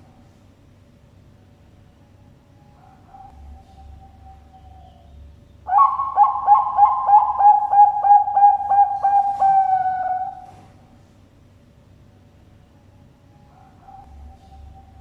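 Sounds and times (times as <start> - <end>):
dove cooing: 5.7 - 10.8.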